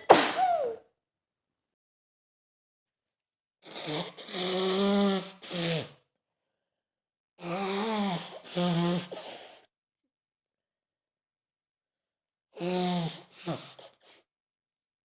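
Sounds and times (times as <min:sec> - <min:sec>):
woman sneezing: 0:00.0 - 0:00.8.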